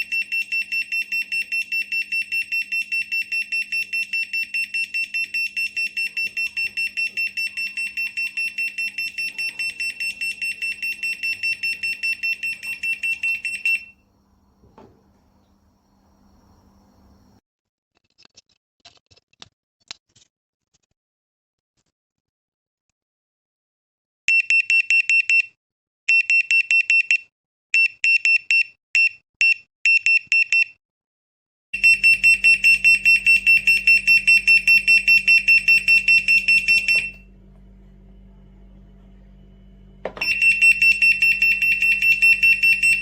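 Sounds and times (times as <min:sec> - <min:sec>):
water leak alarm beeping: 0:00.0 - 0:14.1, 0:31.8 - 0:37.4, 0:40.0 - 0:43.0
low hum: 0:31.8 - 0:43.0.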